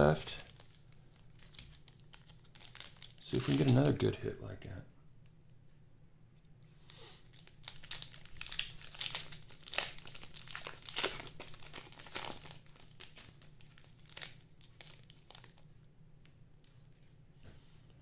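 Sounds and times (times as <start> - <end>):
plastic wrapper crinkling: 0.0 - 4.0, 7.2 - 17.2.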